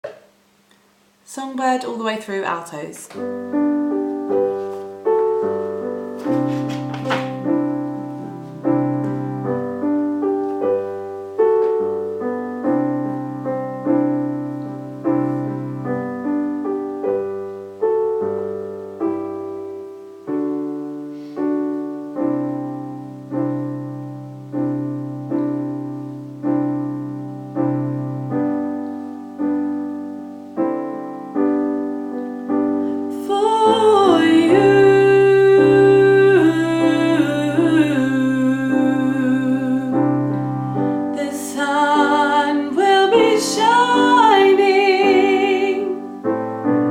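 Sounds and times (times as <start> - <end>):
piano playing slow chords: 3.2 - 46.9
woman singing with vibrato: 33.1 - 40.4, 41.1 - 46.1.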